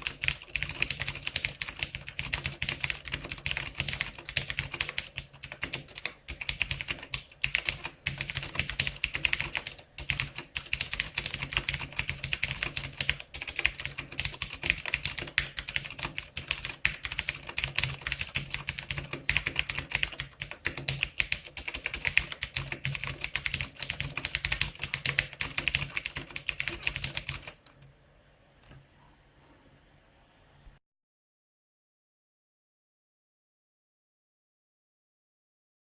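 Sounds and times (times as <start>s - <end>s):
mechanical keyboard typing: 0.0s - 27.8s.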